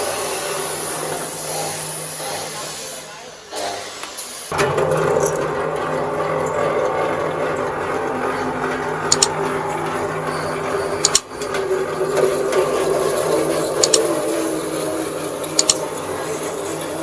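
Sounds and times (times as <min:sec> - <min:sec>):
wire stripping machine humming: 0:04.5 - 0:17.0
sharp clicks: 0:09.0 - 0:09.6, 0:11.0 - 0:11.6, 0:15.5 - 0:15.9.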